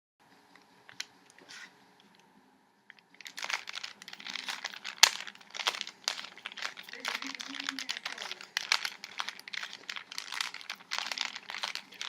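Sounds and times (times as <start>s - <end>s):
puzzle cube clicking and rattling: 3.2s - 12.0s.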